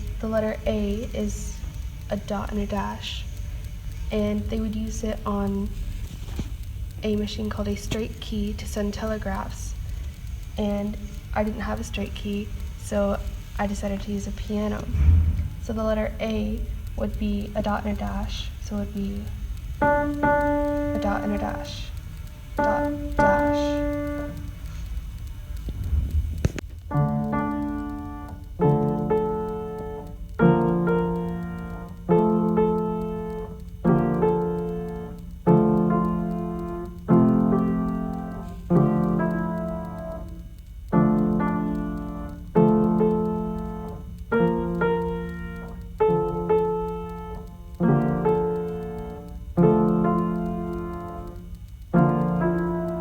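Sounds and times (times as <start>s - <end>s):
piano chords: 13.8s - 53.0s.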